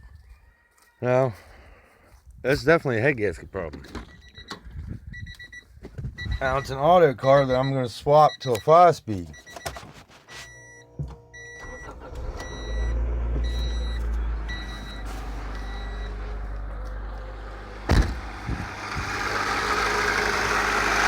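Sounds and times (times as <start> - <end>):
car warning chime beeping: 5.2 - 16.9
car engine running rough: 10.4 - 21.0
sharp thump: 17.8 - 18.7.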